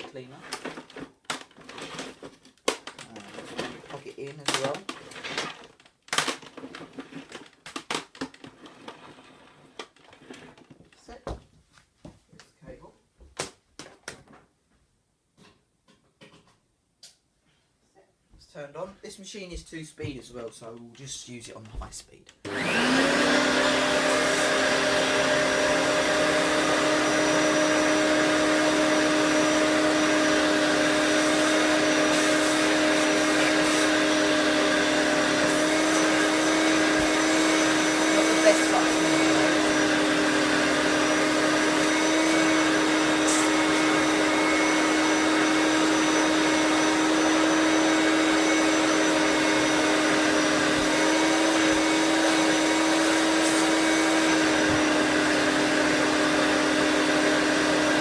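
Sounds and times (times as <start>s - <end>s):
vacuum cleaner running: 22.4s - 58.0s.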